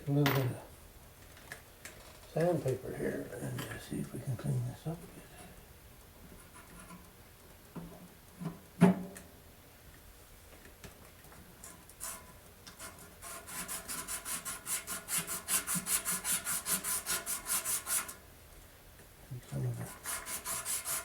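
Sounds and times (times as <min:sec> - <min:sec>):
sandpaper rubbing on metal: 0:12.8 - 0:18.2, 0:19.9 - 0:21.0.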